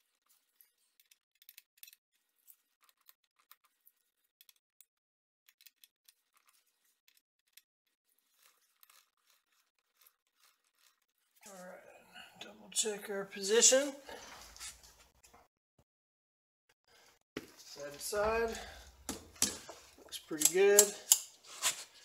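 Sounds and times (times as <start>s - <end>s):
wrench clicking on metal: 20.4s - 21.3s.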